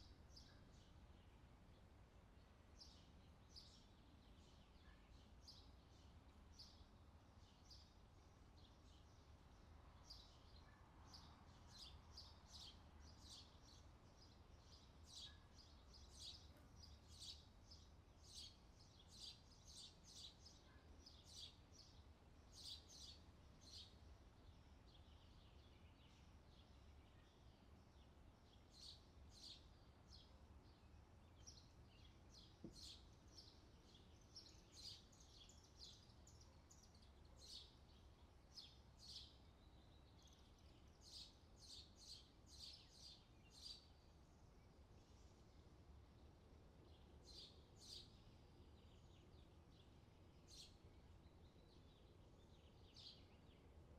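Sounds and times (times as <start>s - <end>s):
small birds chirping: 0.0s - 53.9s.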